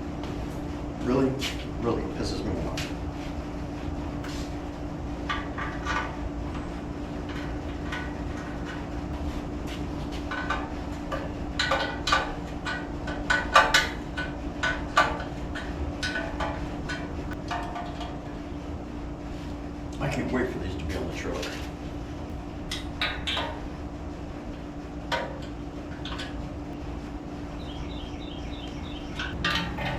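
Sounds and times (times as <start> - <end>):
steady low hum: 0.0 - 29.9
metal parts and tools clanking: 5.3 - 18.3, 29.1 - 29.9.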